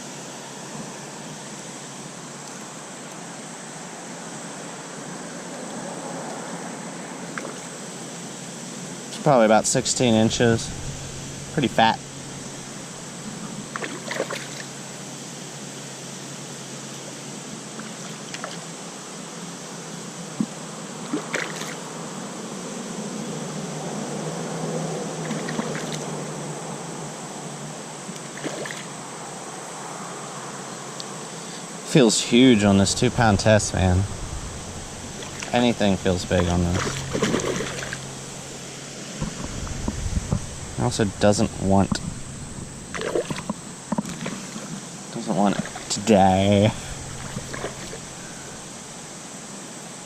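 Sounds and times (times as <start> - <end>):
stream water running: 0.0 - 50.0
stream water rushing: 9.1 - 15.0, 31.9 - 50.0.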